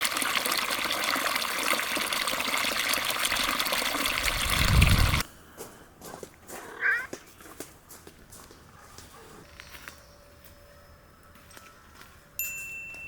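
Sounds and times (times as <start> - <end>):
rushing water: 0.0 - 5.2.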